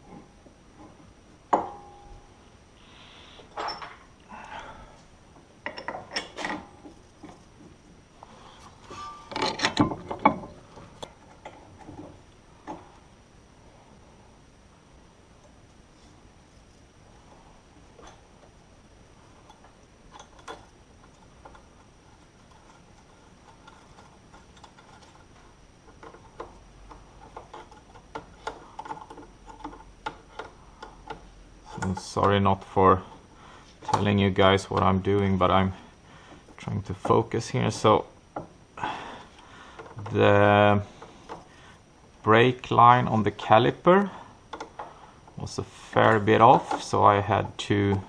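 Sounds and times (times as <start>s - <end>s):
hand tools clanking on metal: 8.9s - 10.5s.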